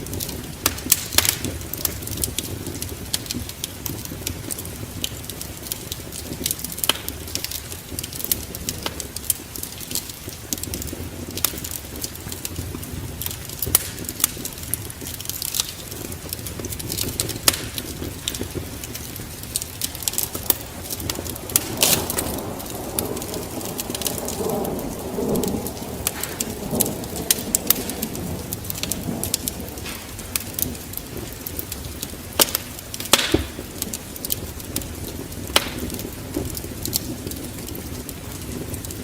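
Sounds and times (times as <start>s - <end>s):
rain hissing: 0.0s - 39.0s
wood fire crackling and popping: 0.0s - 39.0s
thunder rumbling: 15.8s - 39.0s.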